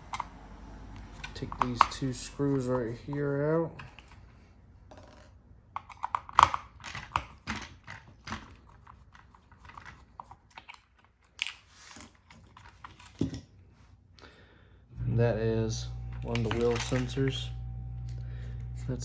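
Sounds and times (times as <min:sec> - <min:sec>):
screwdriver clicking on plastic: 0:01.0 - 0:03.2.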